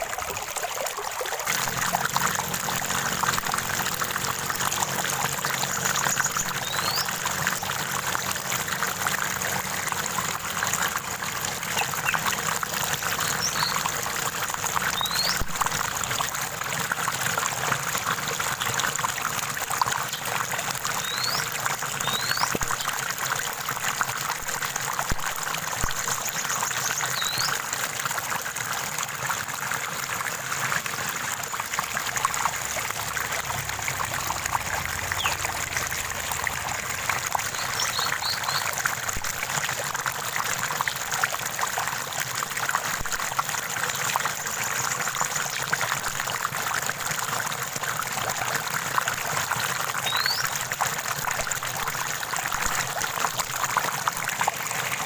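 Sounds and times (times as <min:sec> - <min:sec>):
stream trickling: 0:00.0 - 0:55.0
bird chirps: 0:06.0 - 0:07.1, 0:13.3 - 0:13.8, 0:21.0 - 0:21.4, 0:22.0 - 0:22.6, 0:37.5 - 0:38.7, 0:50.1 - 0:50.4.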